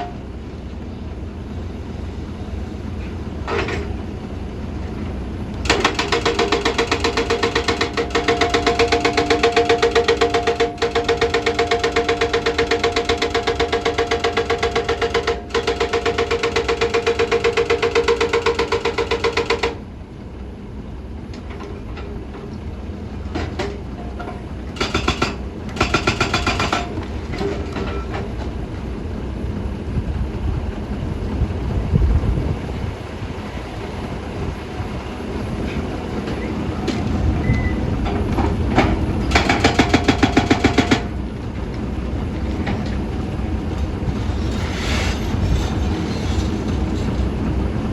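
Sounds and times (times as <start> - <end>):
excavator rattling with buzzing tone: 0.0 - 47.9
low engine rumble: 19.8 - 47.9.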